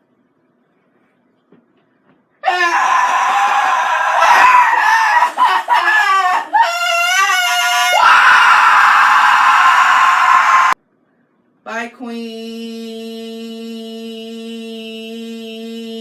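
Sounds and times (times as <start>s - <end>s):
person screaming: 2.4s - 10.8s.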